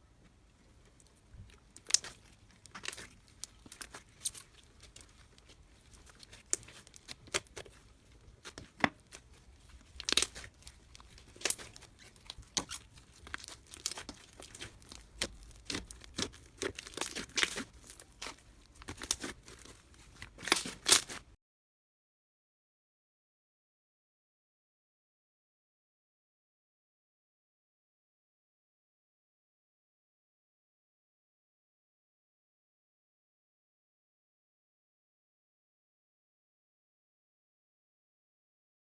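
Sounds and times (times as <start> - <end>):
slime squeezed sticky crackles: 0.8 - 21.2.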